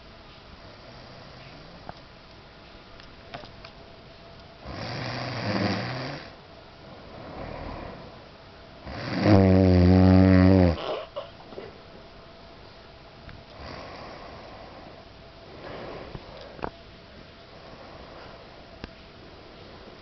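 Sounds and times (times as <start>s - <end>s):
person snoring: 4.6s - 6.3s, 7.1s - 8.2s, 8.9s - 11.1s, 13.6s - 14.5s
faint breath: 6.8s - 8.3s, 13.6s - 16.8s, 17.5s - 20.0s.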